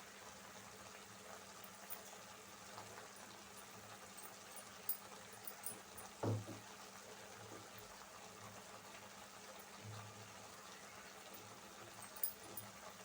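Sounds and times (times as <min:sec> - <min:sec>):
food sizzling in a pan: 0:06.6 - 0:11.9.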